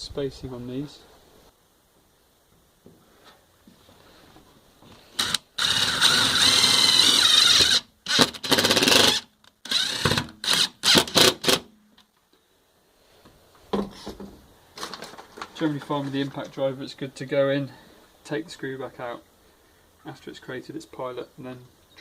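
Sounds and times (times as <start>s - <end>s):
impact driver driving screw: 5.2s - 11.7s.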